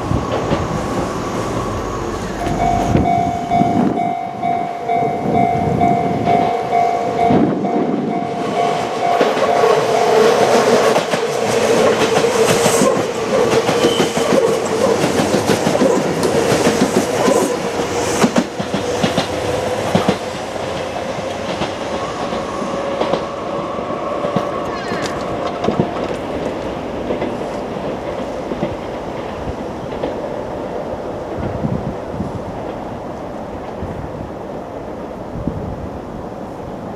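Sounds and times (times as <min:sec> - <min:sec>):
crossing warning bell ringing: 0:02.2 - 0:11.0
train wheels clattering over rail joints: 0:09.2 - 0:23.3, 0:24.3 - 0:30.2.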